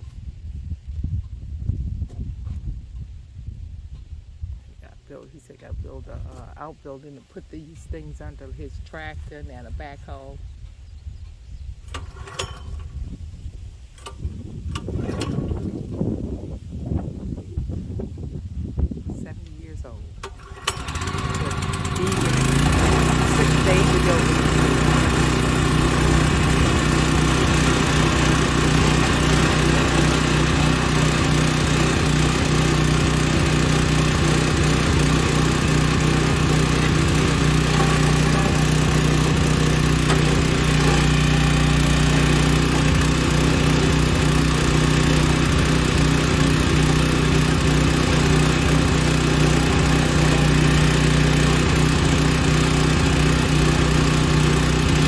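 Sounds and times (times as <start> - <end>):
backhoe engine running: 11.9 - 13.0, 20.1 - 55.0.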